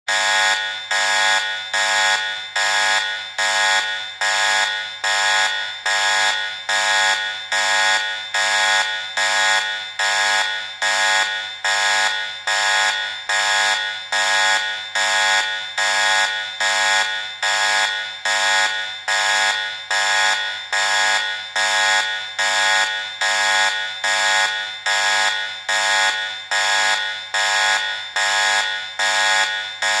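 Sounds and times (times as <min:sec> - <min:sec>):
electronic alarm buzzer: 0:00.1 - 0:30.0.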